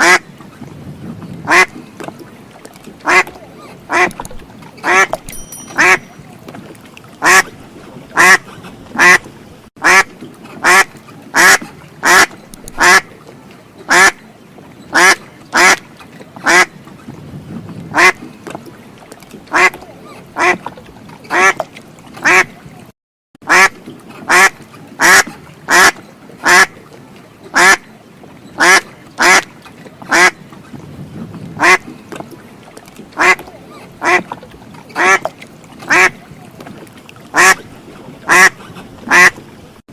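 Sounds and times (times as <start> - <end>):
duck quacking: 11.4 - 13.0, 37.4 - 37.6, 38.3 - 39.3.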